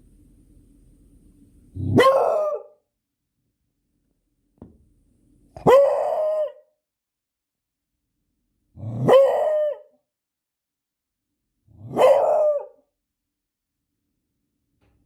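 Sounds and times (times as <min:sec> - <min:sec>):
dog barking: 0:01.8 - 0:02.8, 0:05.6 - 0:06.7, 0:09.0 - 0:10.0, 0:11.8 - 0:12.8.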